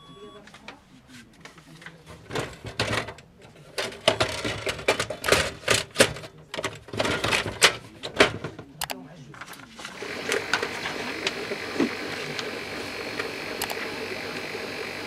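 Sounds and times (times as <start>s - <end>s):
clattering clicks and knocks: 2.1s - 12.5s.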